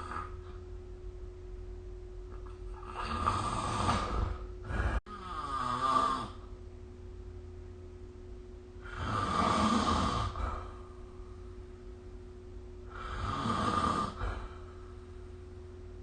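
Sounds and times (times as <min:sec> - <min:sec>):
person snoring: 0:00.0 - 0:00.4, 0:02.7 - 0:06.5, 0:08.8 - 0:10.9, 0:12.8 - 0:14.8
faint steady hum: 0:00.0 - 0:16.0.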